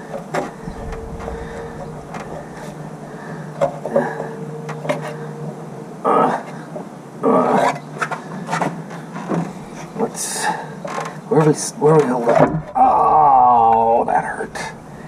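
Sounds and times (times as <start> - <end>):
steady low hum: 0.0 - 7.3, 12.6 - 15.0.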